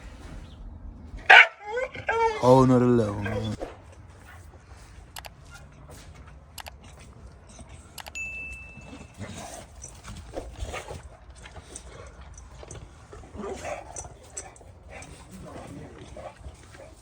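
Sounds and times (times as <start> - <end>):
dog breathing and snuffling: 2.2 - 8.0, 8.7 - 17.0
sharp clicks: 6.5 - 6.8, 8.0 - 8.2
high steady beep: 8.0 - 9.1.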